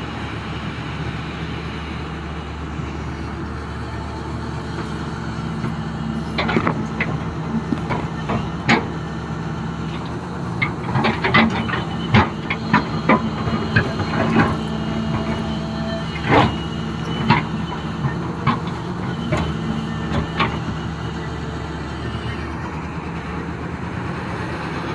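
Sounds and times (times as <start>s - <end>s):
excavator diesel engine running: 0.0s - 24.9s
rocks clattering against bucket: 6.1s - 20.8s.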